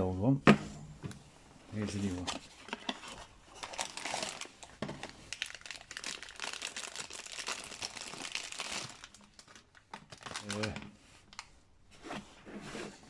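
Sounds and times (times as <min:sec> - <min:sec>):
packaging crinkling: 0:02.0 - 0:11.5.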